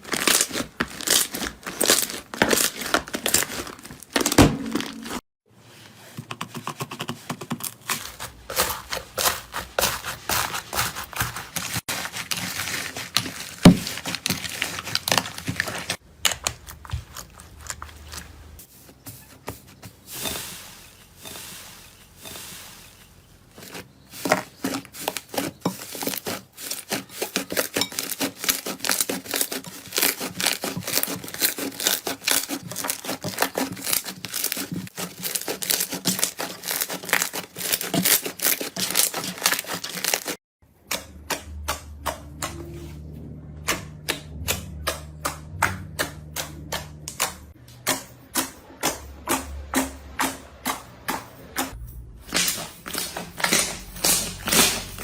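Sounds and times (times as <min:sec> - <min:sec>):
slime crackling and popping: 0:52.3 - 0:55.0.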